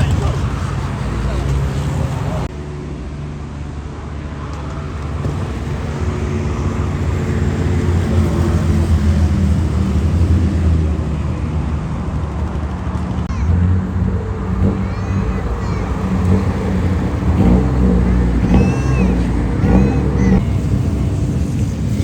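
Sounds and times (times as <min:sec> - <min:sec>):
motorcycle engine running: 0:04.7 - 0:22.0.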